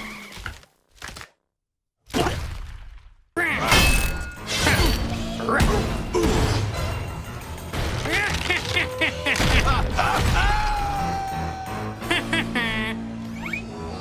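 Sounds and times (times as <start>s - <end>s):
background music: 3.4s - 14.0s.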